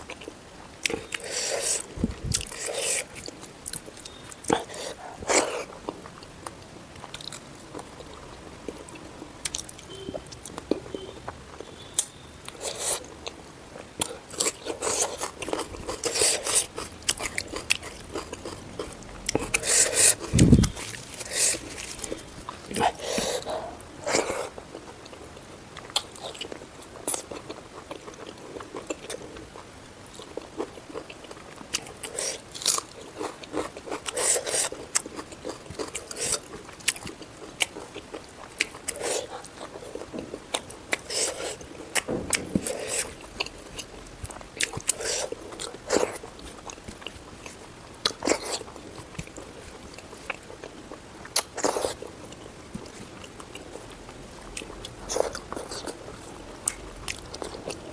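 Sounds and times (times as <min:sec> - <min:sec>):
close chewing and biting: 0:00.0 - 0:57.9
wet mouth clicks: 0:19.4 - 0:20.8.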